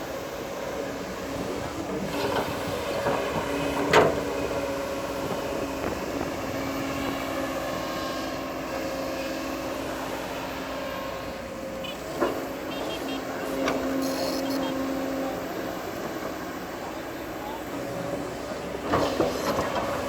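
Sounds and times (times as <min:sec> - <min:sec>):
bulldozer engine running: 0:00.0 - 0:20.0
steel tracks squealing and clanking: 0:10.1 - 0:17.6.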